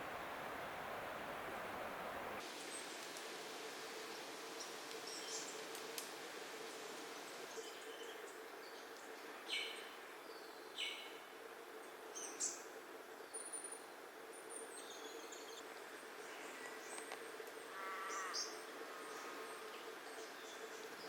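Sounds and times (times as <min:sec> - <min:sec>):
background hiss: 0:00.0 - 0:21.0
forest birds calling: 0:07.4 - 0:11.2, 0:14.4 - 0:21.0.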